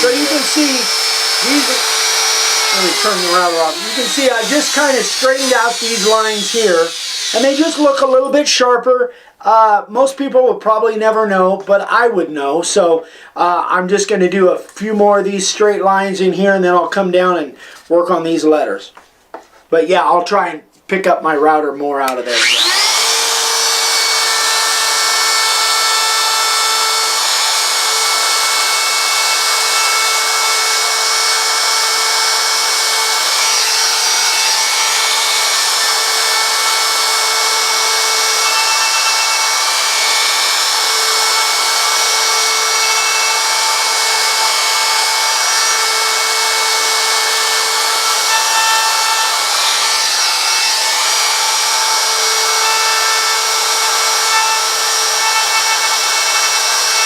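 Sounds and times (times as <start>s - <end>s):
router whining cutting wood: 0.0s - 8.1s, 22.1s - 57.0s.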